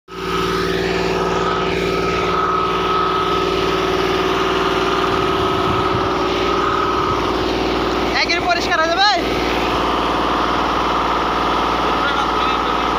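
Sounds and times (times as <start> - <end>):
high whine: 0.1 - 12.9
tractor engine running: 0.1 - 12.9.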